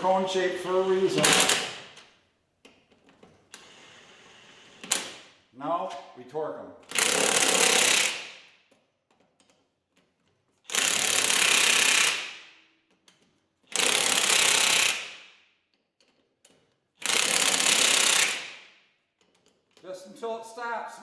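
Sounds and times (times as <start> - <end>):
impact wrench hammering: 1.2 - 2.0, 6.9 - 8.5, 10.7 - 12.6, 17.0 - 19.4.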